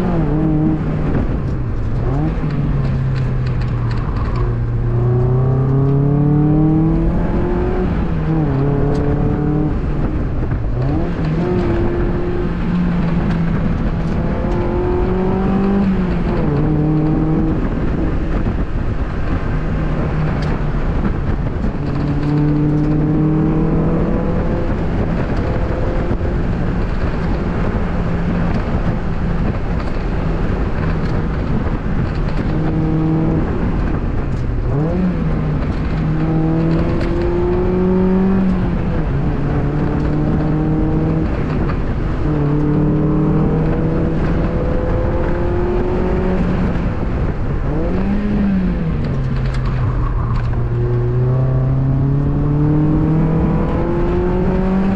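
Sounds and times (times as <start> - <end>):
car engine accelerating: 0.0 - 54.9
road and wind noise: 0.0 - 54.9.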